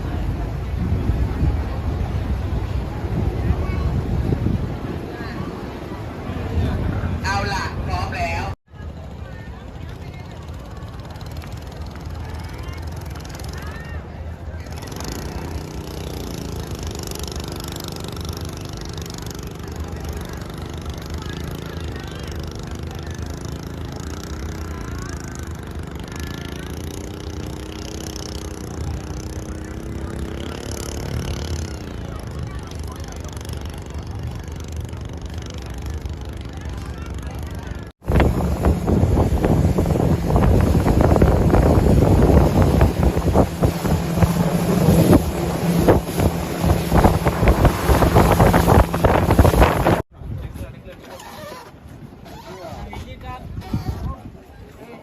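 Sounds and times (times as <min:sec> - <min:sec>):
wind buffeting microphone: 0:00.0 - 0:08.6, 0:38.0 - 0:50.9
boat engine throbbing: 0:09.3 - 0:50.0.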